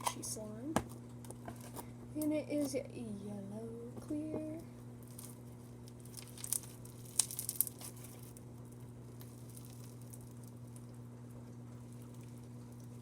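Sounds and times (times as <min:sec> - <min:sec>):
steady low hum: 0:00.0 - 0:13.0
crunchy slime crackling pops: 0:05.0 - 0:10.9.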